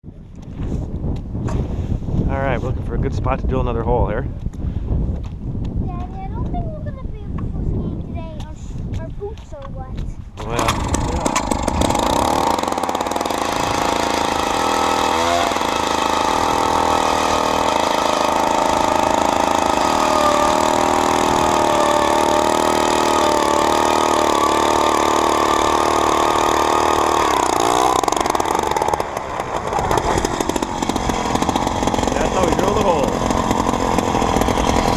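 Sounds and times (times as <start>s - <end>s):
ice auger engine running: 10.4s - 34.9s.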